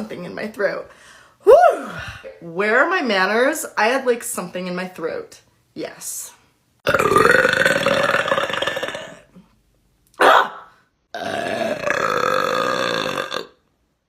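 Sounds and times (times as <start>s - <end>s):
woman burping: 6.8s - 9.6s, 10.2s - 13.6s.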